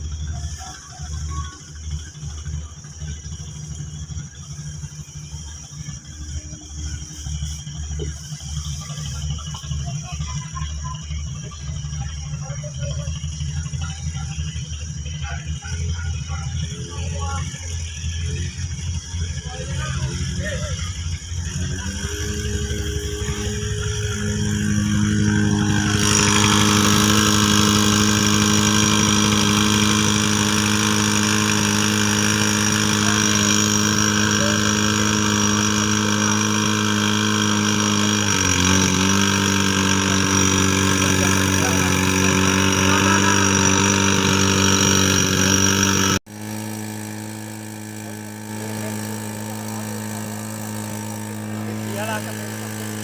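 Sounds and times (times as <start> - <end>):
fire pump engine running: 0.0 - 53.0.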